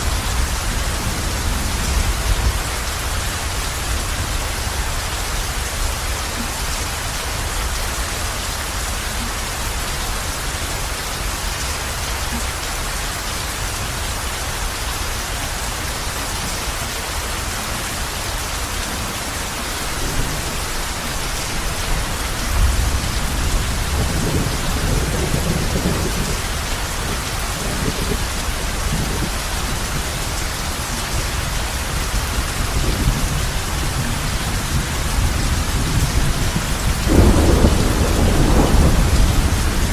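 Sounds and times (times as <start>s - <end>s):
heavy rain on a roof: 0.0s - 39.9s
thunder rumbling: 18.9s - 30.4s, 32.2s - 39.9s.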